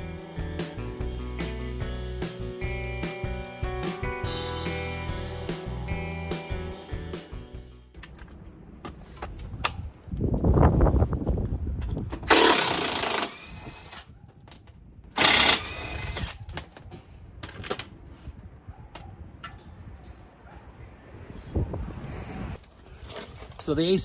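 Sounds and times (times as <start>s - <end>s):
impact wrench hammering: 12.3s - 13.4s, 14.5s - 16.8s.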